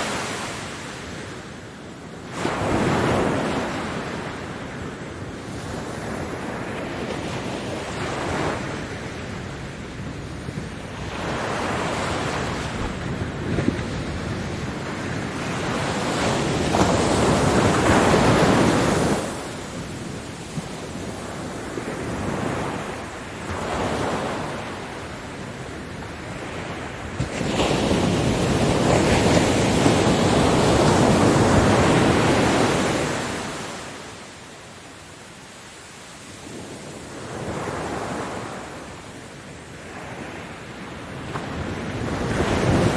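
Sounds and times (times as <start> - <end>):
ocean waves breaking on beach: 0.0 - 42.9.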